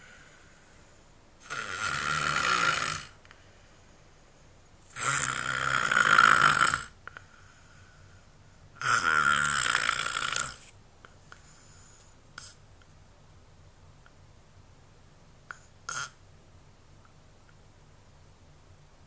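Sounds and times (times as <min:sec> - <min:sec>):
person snoring loudly: 0:01.4 - 0:03.2, 0:04.9 - 0:07.0, 0:08.8 - 0:10.7, 0:15.9 - 0:16.2.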